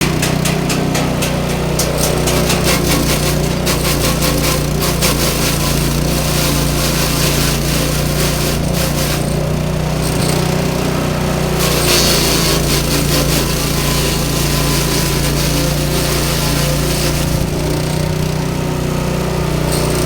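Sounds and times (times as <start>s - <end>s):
grass chopper machine running: 0.0s - 20.0s.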